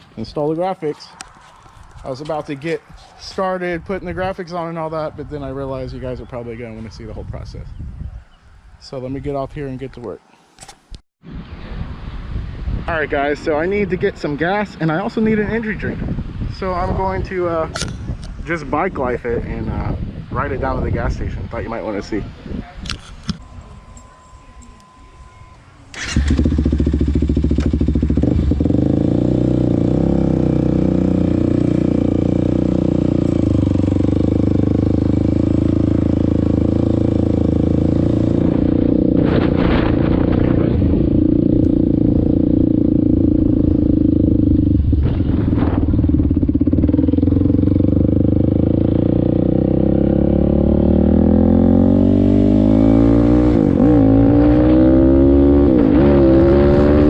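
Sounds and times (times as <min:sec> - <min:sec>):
quad engine idling and revving: 0:26.0 - 0:57.0.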